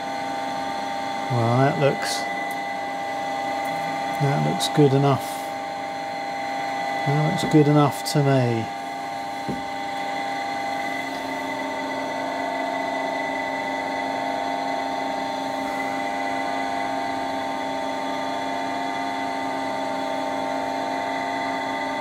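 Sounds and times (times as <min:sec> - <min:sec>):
milling machine motor whining: 0:00.0 - 0:22.0.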